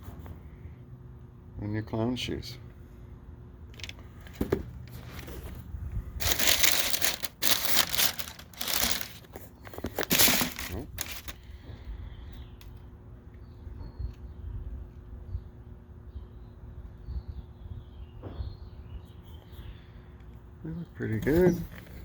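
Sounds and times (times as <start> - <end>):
tissue paper crinkling: 6.2 - 11.4.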